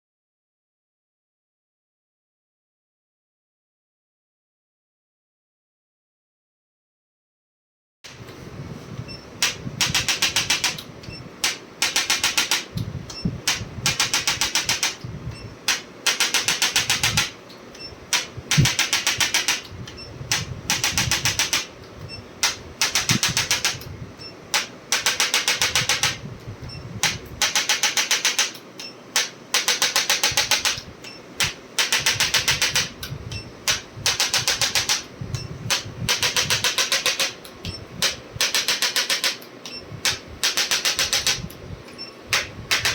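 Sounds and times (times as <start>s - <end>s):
rapid mechanical tapping: 9.4s - 42.9s.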